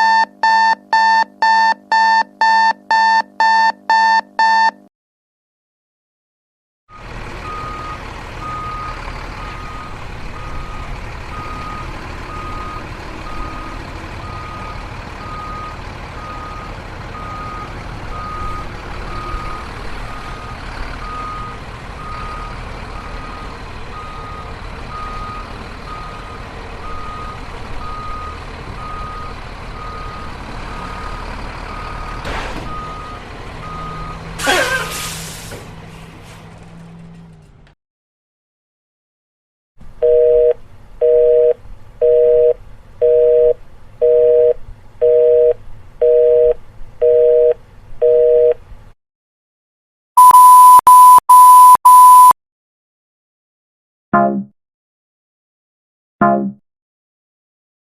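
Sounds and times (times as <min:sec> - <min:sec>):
engine rumble: 0:06.9 - 0:37.8, 0:39.8 - 0:49.0
reversing alarm beeping: 0:50.2 - 0:52.4.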